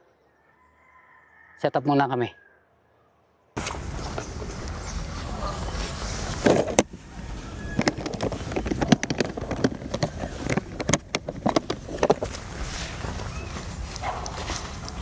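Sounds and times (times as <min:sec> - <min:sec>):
camping gear clicks and knocks: 0:05.8 - 0:15.0.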